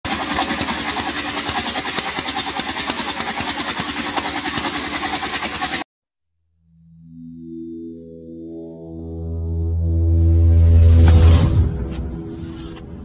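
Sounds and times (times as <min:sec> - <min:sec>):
circular saw engine running: 0:00.0 - 0:05.9.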